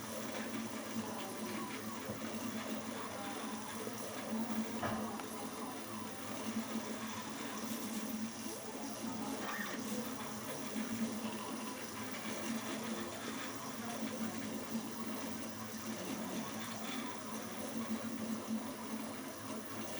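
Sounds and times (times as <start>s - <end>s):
printer stepper motors whirring: 0.0s - 19.9s.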